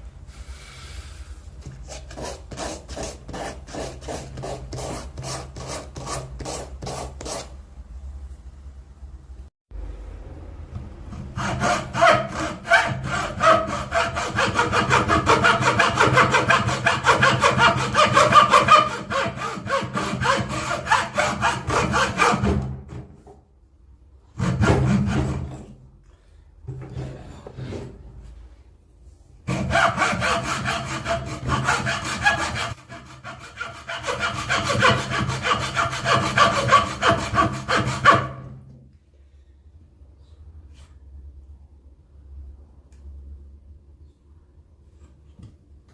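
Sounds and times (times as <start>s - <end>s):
hand saw cutting wood: 1.8s - 7.5s, 11.1s - 22.8s, 24.4s - 25.7s, 29.5s - 38.5s.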